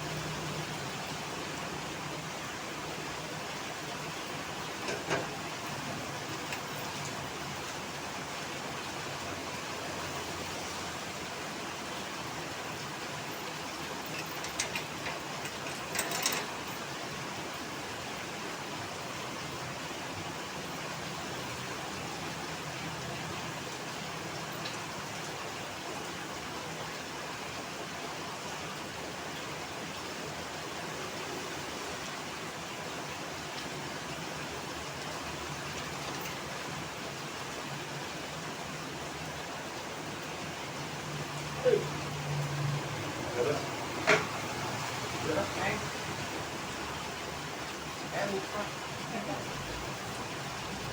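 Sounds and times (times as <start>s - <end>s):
heavy rain falling: 0.0s - 50.9s.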